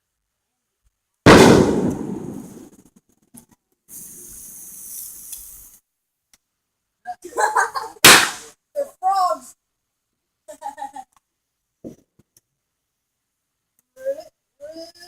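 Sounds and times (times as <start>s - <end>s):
steady hiss: 1.2s - 11.7s
firework bang: 1.3s - 2.8s, 8.0s - 8.5s.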